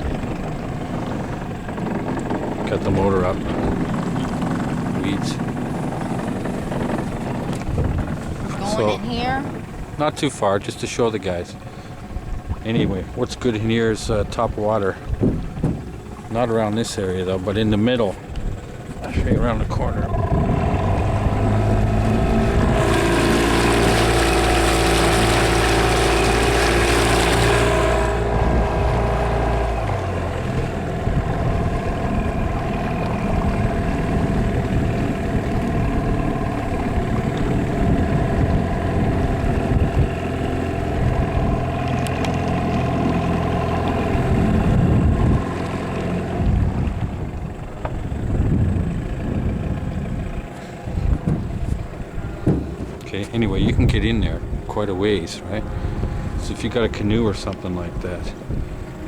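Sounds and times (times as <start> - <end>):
outboard motor running: 0.0 - 59.0.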